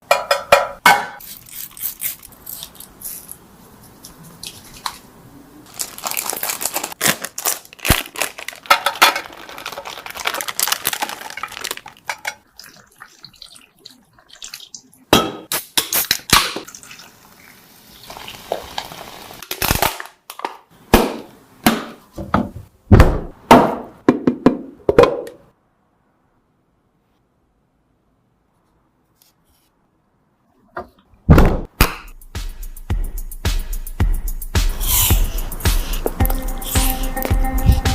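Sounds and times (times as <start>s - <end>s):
dishes and utensils clinking: 0.0s - 1.2s.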